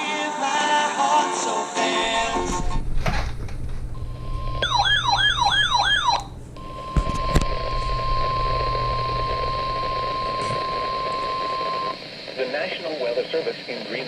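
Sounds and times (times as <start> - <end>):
brief steady tone: 4.0 - 12.0
warbling siren-like tone: 4.0 - 12.0.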